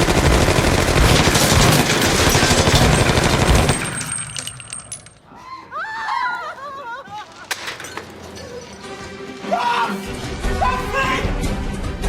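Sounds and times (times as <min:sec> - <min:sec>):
rapid automatic gunfire: 0:00.0 - 0:04.1.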